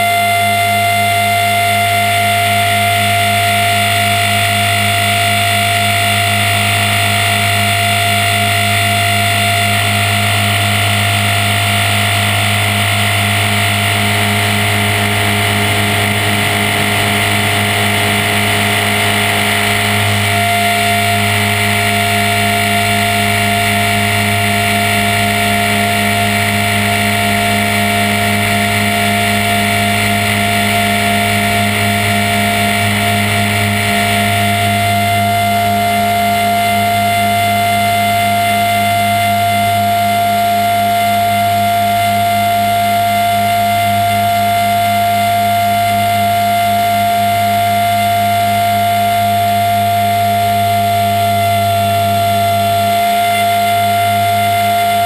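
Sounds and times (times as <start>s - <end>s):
rc helicopter rotor hum: 0.0s - 55.0s
motor and gears whining: 9.7s - 36.0s.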